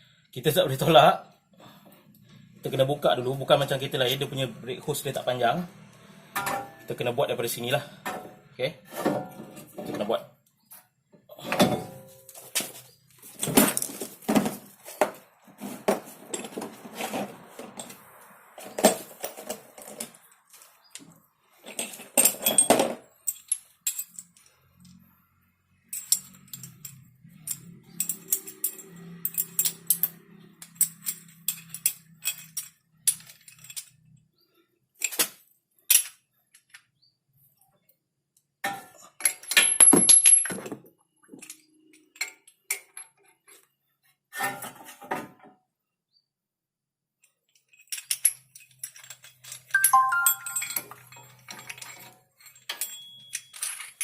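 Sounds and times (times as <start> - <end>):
metal tools clinking: 6.4 - 7.1, 11.4 - 25.0, 25.8 - 34.2, 47.5 - 54.0.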